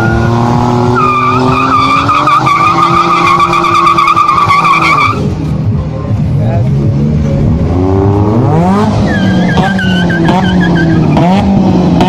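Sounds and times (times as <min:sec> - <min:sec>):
tyres squealing: 0:00.0 - 0:05.3, 0:09.0 - 0:11.2
car engine at high revs: 0:00.0 - 0:12.0.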